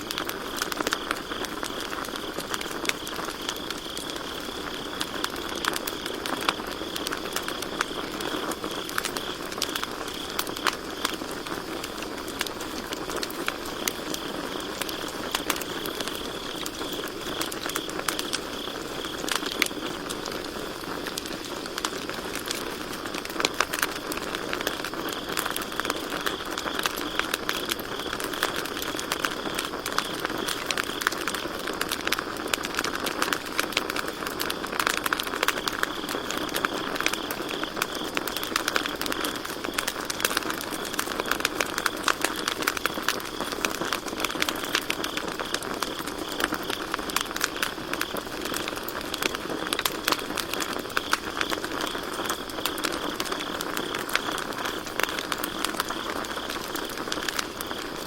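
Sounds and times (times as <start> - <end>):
campfire crackling and popping: 0.0 - 58.0
crickets chirping: 0.0 - 58.0.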